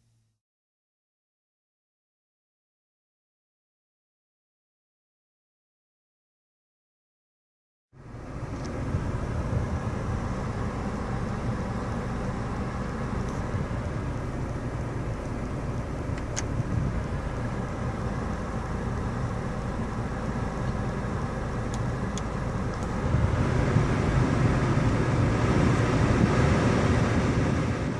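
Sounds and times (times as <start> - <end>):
car engine and air conditioning hum: 8.0 - 27.9.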